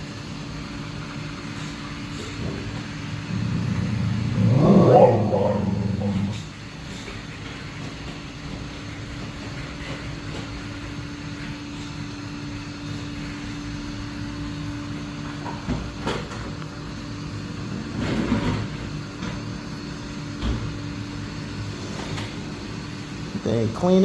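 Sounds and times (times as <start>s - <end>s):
robot vacuum motor hum: 3.2s - 6.4s.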